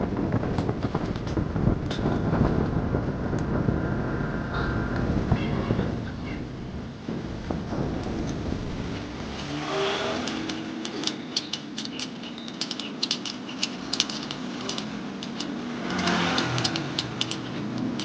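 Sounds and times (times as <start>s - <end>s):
small metal parts clicking: 9.4s - 18.0s.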